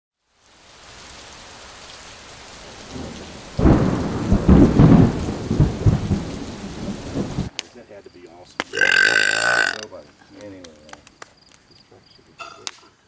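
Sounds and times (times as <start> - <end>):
loud low burp: 8.7 - 9.9.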